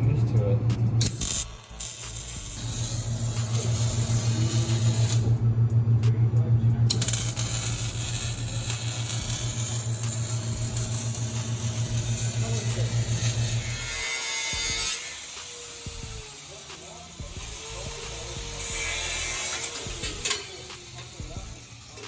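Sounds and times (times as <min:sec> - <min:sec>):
welder buzzing: 0:01.0 - 0:22.0.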